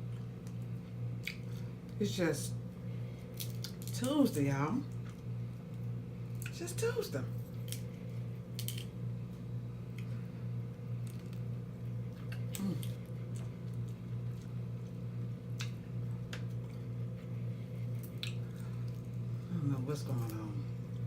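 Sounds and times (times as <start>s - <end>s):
steady low hum: 0.0s - 21.0s
wet mouth smacks: 1.2s - 1.4s, 18.0s - 18.4s.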